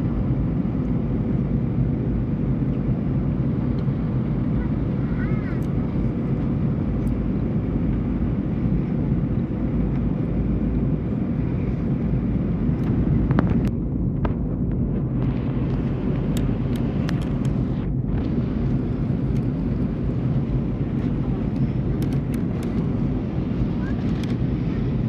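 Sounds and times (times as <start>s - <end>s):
airliner engine and airflow drone: 0.0s - 25.0s.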